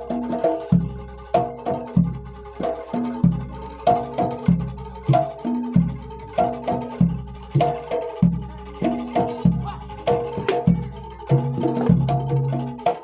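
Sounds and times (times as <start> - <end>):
fast percussion ensemble: 0.0 - 13.0
ringing pitched metal tones: 0.0 - 13.0
deep bass drum booming: 3.1 - 12.8.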